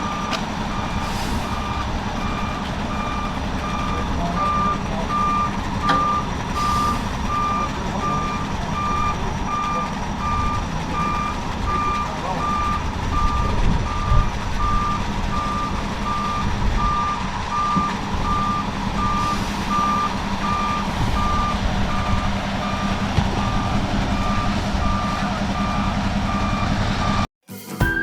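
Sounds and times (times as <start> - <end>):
truck engine running: 0.0 - 27.3
truck backup alarm beeping: 0.0 - 28.0.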